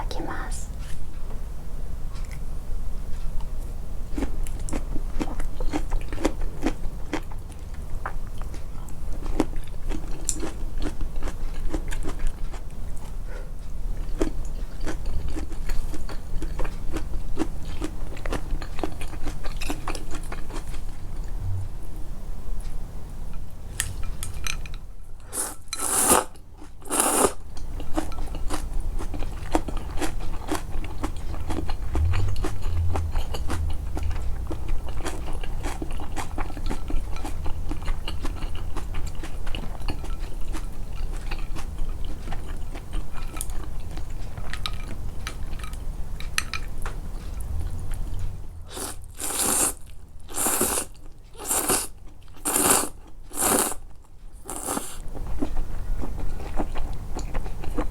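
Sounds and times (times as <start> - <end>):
close wet chewing: 33.4 - 45.8, 48.2 - 57.9
loud noodle slurps: 48.7 - 51.9, 52.5 - 53.8, 54.5 - 55.0.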